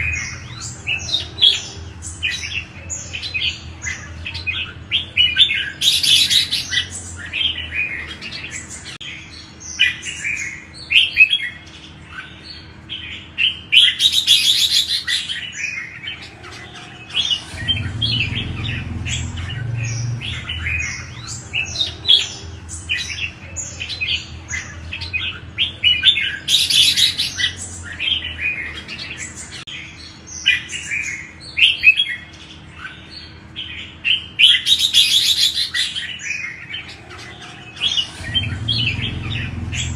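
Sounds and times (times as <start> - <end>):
bird singing chirpy phrases: 0.0 - 39.9
harsh bird chattering: 0.0 - 39.9
low rumble: 17.2 - 23.3, 38.0 - 39.9.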